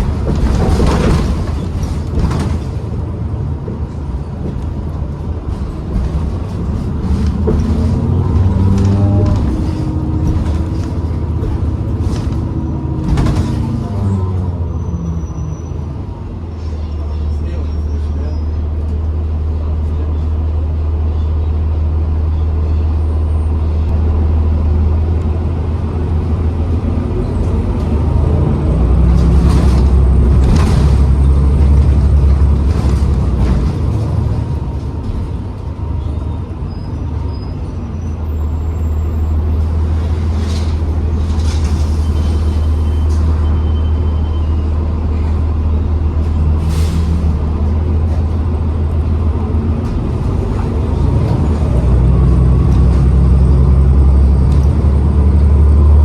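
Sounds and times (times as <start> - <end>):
bus engine drone: 0.0 - 56.0.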